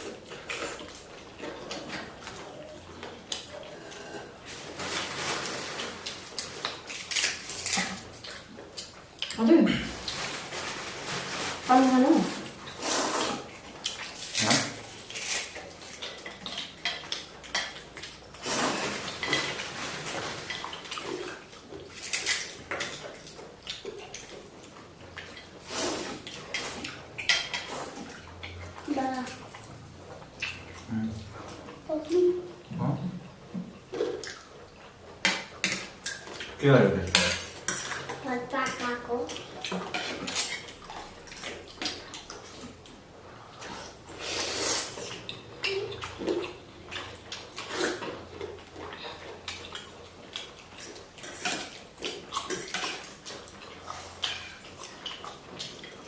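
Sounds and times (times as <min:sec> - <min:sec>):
slurping noodles: 0:12.7 - 0:13.5, 0:18.4 - 0:19.7, 0:25.6 - 0:26.8, 0:43.6 - 0:45.3
cutlery clinking against bowls: 0:35.2 - 0:38.8, 0:39.6 - 0:42.6.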